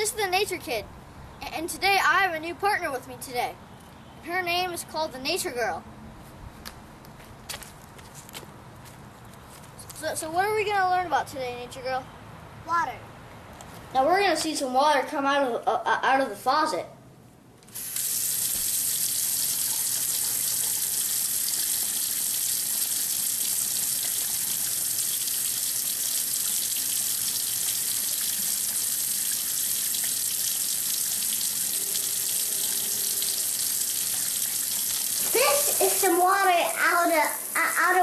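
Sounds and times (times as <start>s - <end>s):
water running from faucet: 17.8s - 38.0s.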